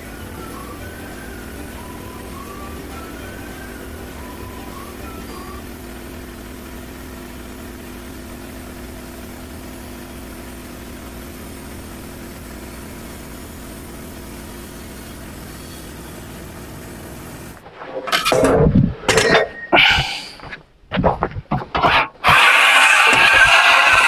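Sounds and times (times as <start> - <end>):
engine idling: 0.0 - 17.6.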